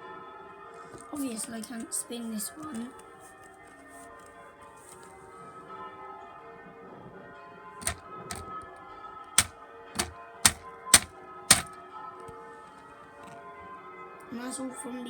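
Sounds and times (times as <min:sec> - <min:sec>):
sharp clacks: 0:07.8 - 0:08.6, 0:09.4 - 0:11.8.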